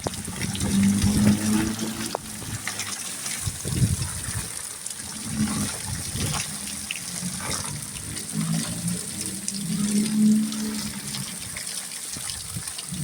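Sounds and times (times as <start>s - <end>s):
drips and patters: 0.0s - 13.0s
heavy rain: 0.0s - 13.0s
water gushing and splashing: 0.0s - 13.0s.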